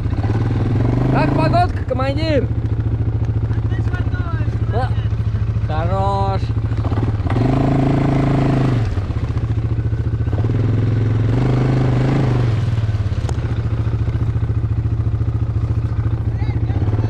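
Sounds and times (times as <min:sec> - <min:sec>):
atv engine running: 0:00.0 - 0:17.0.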